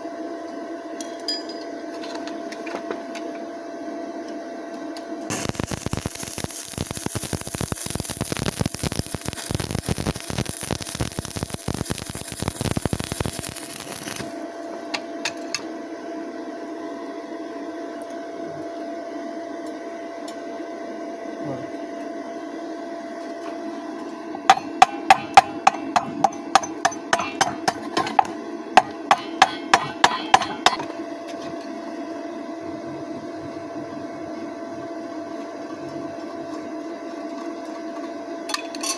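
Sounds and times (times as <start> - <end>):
electrical hum: 1.7 - 38.9
welding arc crackling: 5.3 - 14.9, 24.5 - 31.0
metal-on-metal taps: 24.5 - 30.9.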